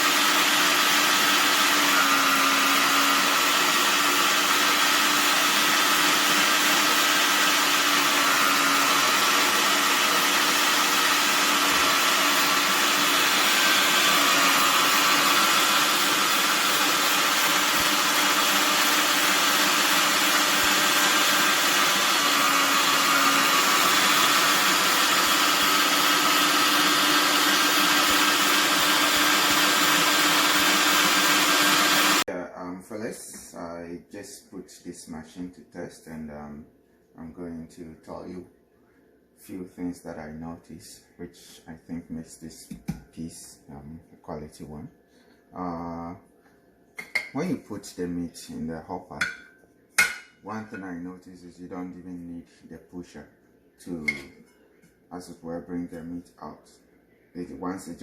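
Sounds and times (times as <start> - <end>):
electric meat grinder whirring: 0.0 - 32.3.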